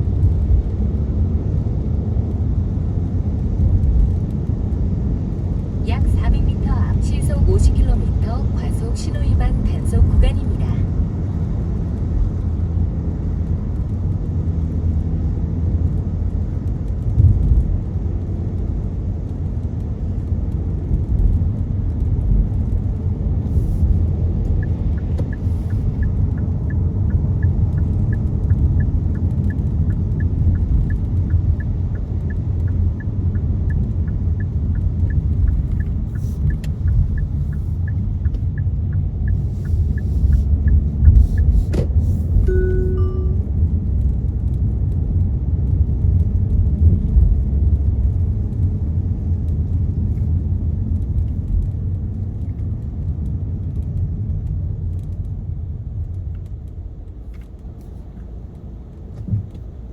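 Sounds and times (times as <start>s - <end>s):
car road and engine rumble: 0.0s - 59.9s
turn signal ticking: 5.3s - 12.5s, 15.8s - 55.3s.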